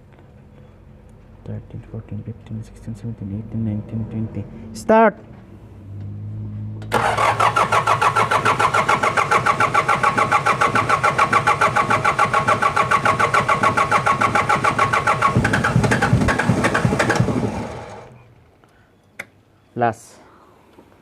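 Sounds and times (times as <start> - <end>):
starter motor cranking diesel engine: 6.9 - 18.2.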